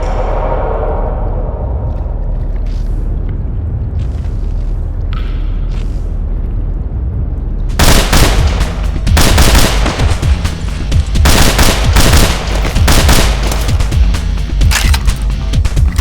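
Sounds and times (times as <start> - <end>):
low background music: 0.0 - 16.0
automatic gunfire: 7.8 - 10.4, 11.2 - 14.0.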